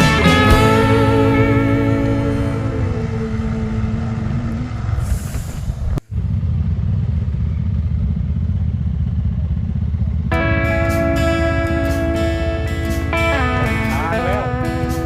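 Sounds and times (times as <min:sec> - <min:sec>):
music: 0:00.0 - 0:04.0, 0:10.3 - 0:15.0
off-road motorcycle rumble: 0:00.0 - 0:15.0.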